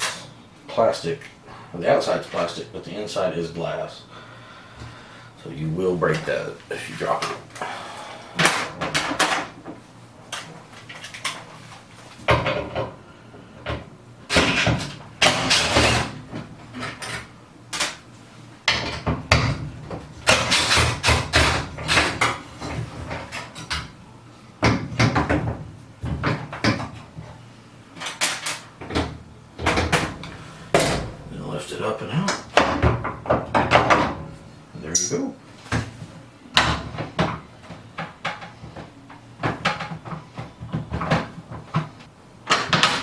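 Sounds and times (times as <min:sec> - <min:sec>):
tools rattling and knocking: 0:13.6 - 0:18.0, 0:18.7 - 0:24.0, 0:28.0 - 0:31.3, 0:32.4 - 0:35.3.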